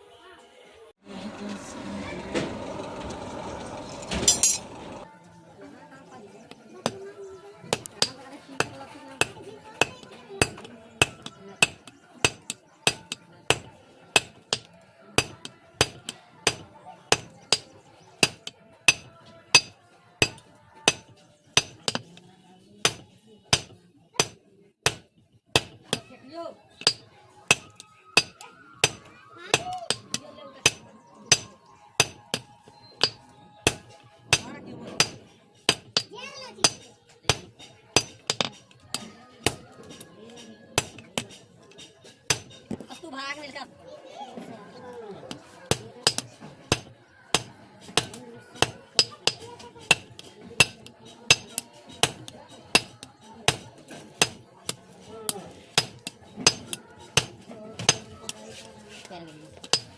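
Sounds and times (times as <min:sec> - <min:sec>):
hammer striking steel on anvil: 0:07.8 - 0:22.0, 0:22.8 - 0:26.1, 0:26.8 - 0:40.0, 0:40.8 - 0:41.4, 0:42.3 - 0:42.6, 0:45.7 - 0:58.4, 0:59.6 - 0:59.9.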